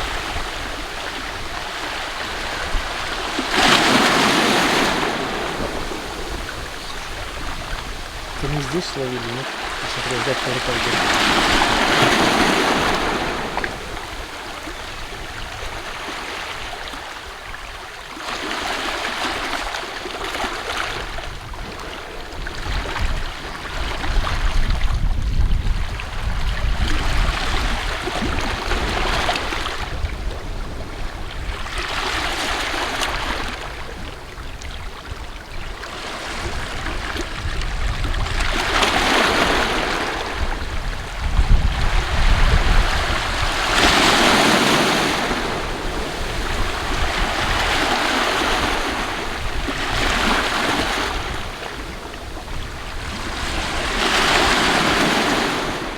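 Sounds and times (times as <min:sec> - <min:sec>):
waves washing onto shore: 0:00.0 - 0:55.9
wind rumble on microphone: 0:20.9 - 0:55.9.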